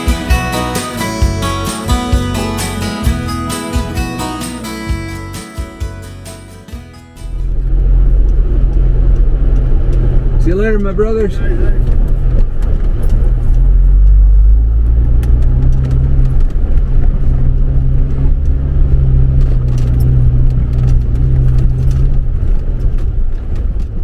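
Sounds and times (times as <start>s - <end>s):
vehicle engine droning: 0.0s - 24.0s.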